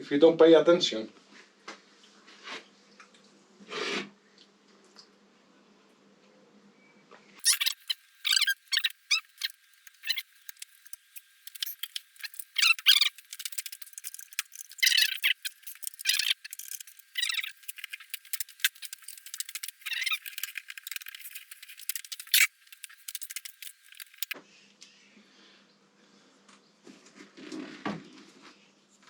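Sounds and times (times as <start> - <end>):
sharp clicks: 7.4 - 24.4.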